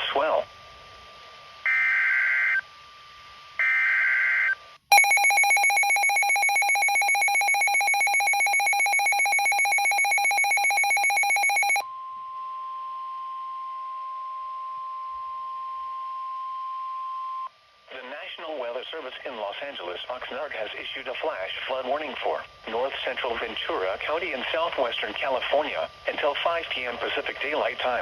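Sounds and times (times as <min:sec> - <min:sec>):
pulsing electronic alarm: 0:03.6 - 0:11.8
steady warning tone: 0:04.9 - 0:11.8.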